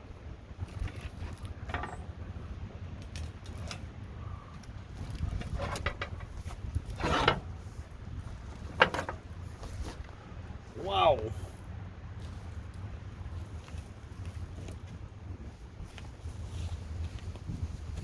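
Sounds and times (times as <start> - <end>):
metallic clanks and scrapes: 0.7 - 2.1, 5.1 - 7.8, 8.7 - 9.2.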